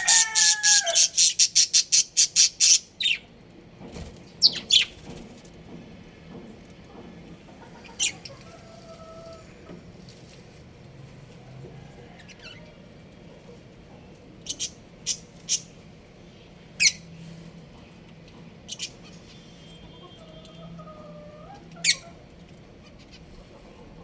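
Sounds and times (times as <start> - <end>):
budgerigars chirping: 0.2 - 3.3, 14.4 - 15.7, 16.8 - 17.0, 18.7 - 20.7, 21.8 - 22.2.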